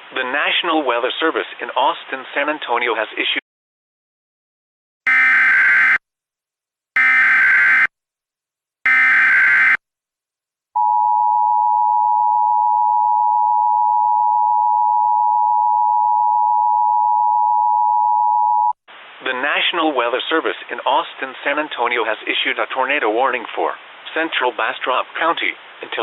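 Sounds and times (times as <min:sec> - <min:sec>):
two-tone alert signal: 0:08.9 - 0:09.8.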